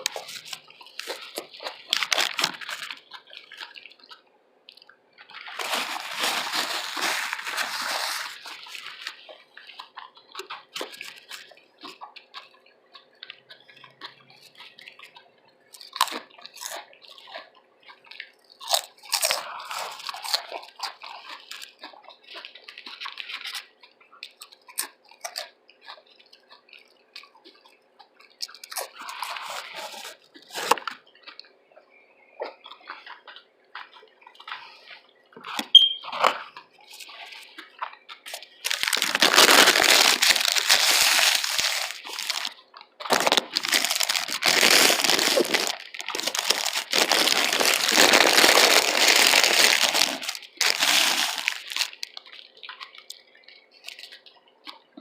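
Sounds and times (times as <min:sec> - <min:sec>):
crunchy chewing: 0:00.0 - 0:55.0
wet mouth clicks: 0:08.3 - 0:15.2, 0:15.8 - 0:31.5, 0:35.4 - 0:38.8, 0:51.3 - 0:54.9.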